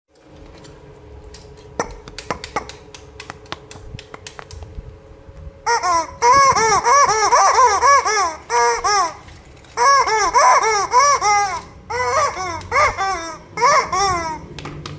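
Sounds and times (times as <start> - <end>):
high-pitched laughter-like sound: 5.7 - 14.5
plastic toy parts clicking: 11.0 - 13.0.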